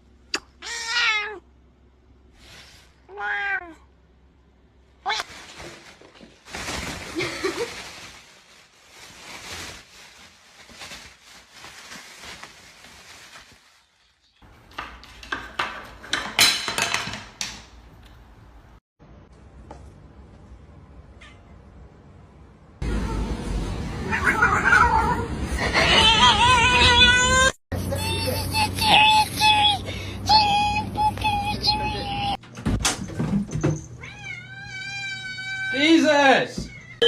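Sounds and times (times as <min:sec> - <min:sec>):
cat meowing: 0:00.6 - 0:01.4, 0:03.1 - 0:03.8, 0:34.0 - 0:35.8.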